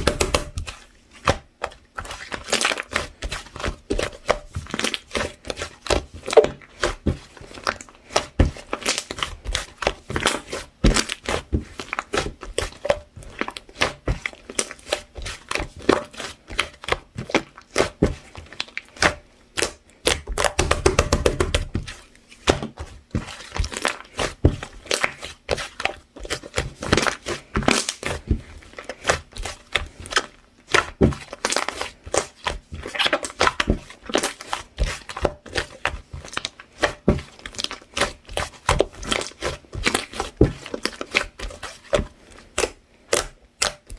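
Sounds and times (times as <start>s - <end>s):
slime squeezed by hand: 29.0s - 35.1s.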